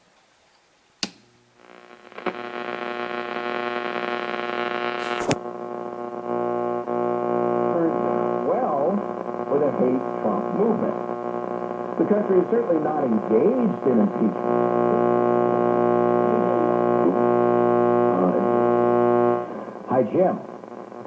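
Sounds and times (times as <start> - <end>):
wavering radio voices: 1.7 - 21.0
loud steady speaker hum: 2.1 - 21.0
radio switch click: 3.4 - 5.5.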